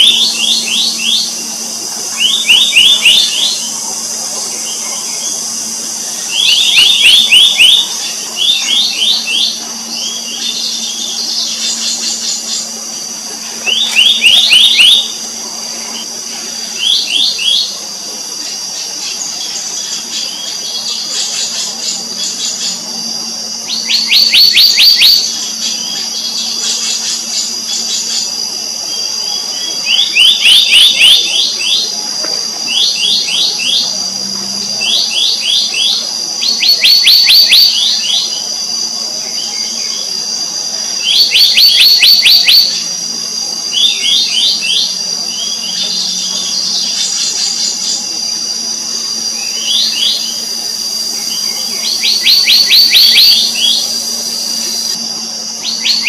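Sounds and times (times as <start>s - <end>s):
high-pitched drone: 0.0s - 56.0s
bird whistled calls: 2.1s - 5.6s, 6.2s - 12.6s, 13.6s - 15.2s, 23.7s - 27.2s, 34.8s - 38.4s, 41.0s - 42.8s, 49.3s - 55.0s, 55.6s - 56.0s.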